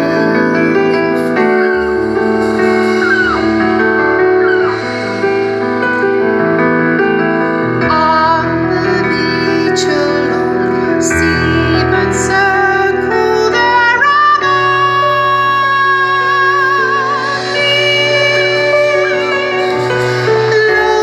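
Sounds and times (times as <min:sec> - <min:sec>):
woman singing soprano with vibrato: 0:00.0 - 0:01.0, 0:07.8 - 0:21.0
keyboard chords: 0:00.0 - 0:21.0.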